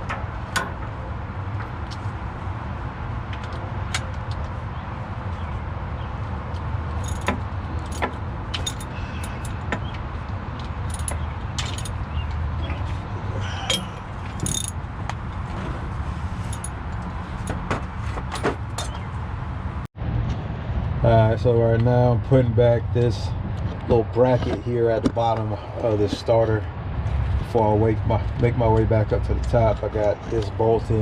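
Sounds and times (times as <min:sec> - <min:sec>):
metallic clinks of hand tools: 0:07.0 - 0:09.6, 0:13.7 - 0:14.8.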